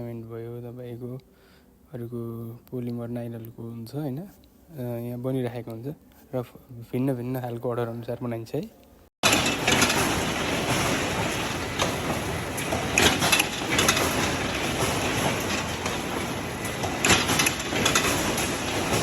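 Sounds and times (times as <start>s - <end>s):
net-making machine clattering: 9.2s - 19.0s.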